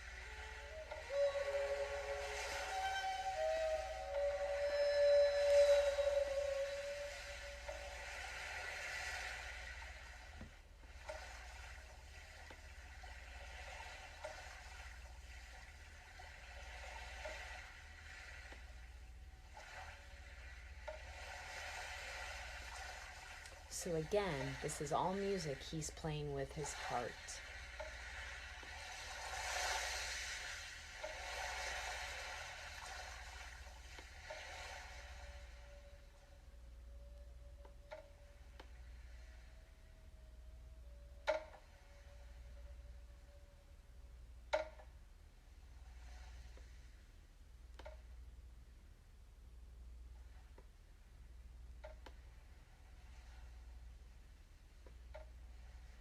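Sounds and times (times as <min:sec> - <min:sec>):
ambient electronic music: 0:00.0 - 0:10.0
gentle recurring tone: 0:00.0 - 0:45.0
soft wash of ambient music: 0:00.0 - 0:50.5
low steady hum: 0:00.0 - 0:56.0.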